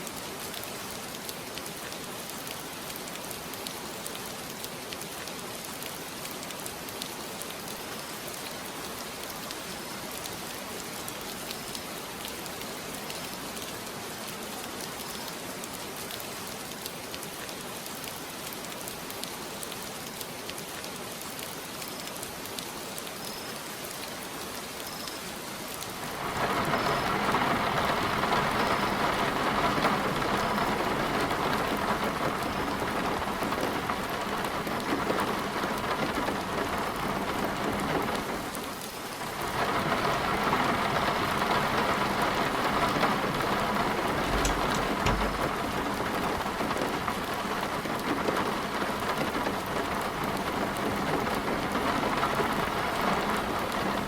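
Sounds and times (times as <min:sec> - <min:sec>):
heavy rain pouring: 0:00.0 - 0:54.0.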